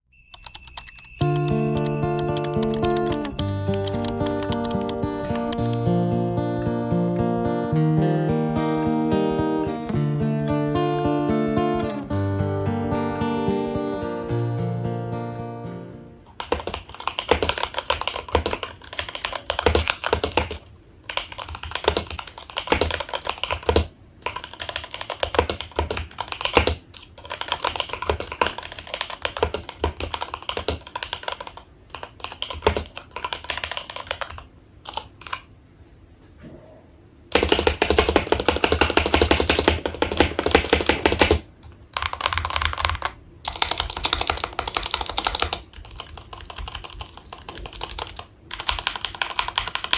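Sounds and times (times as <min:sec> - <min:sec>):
mechanical keyboard typing: 0:00.3 - 0:06.0, 0:16.3 - 0:35.5, 0:37.3 - 0:49.9.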